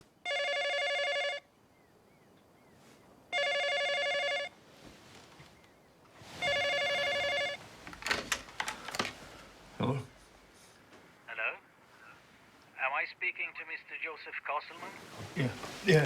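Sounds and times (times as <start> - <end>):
telephone ringing: 0.2 - 1.5, 3.3 - 4.6, 6.2 - 7.9.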